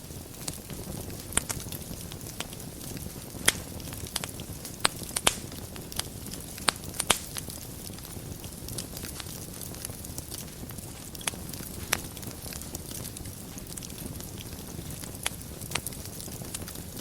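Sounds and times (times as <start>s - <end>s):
fire crackles and pops: 0.0s - 17.0s
fire flames rumbling: 0.0s - 17.0s.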